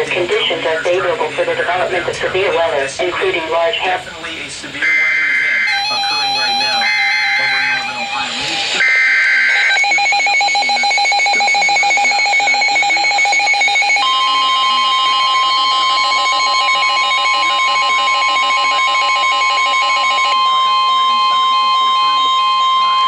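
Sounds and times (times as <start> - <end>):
steady warning alarm tone: 4.7 - 23.0
rapid pulsing alert beep: 4.8 - 23.0
warbling digital data burst: 4.9 - 14.0.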